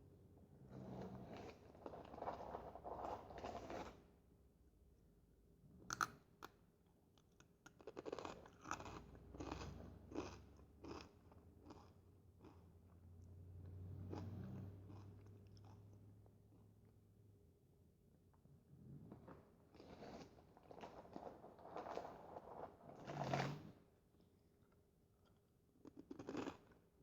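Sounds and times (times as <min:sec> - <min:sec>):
corn chips crunching: 0:07.7 - 0:12.6, 0:25.9 - 0:26.7
crunchy chewing: 0:07.7 - 0:12.6, 0:25.8 - 0:26.8.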